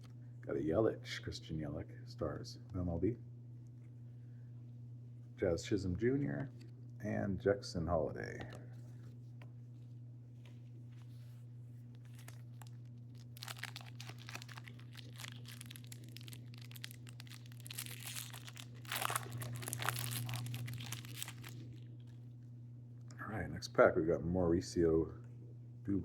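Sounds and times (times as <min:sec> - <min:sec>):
steady low hum: 0:00.0 - 0:26.0
wrapper crinkling and tearing: 0:12.0 - 0:21.8.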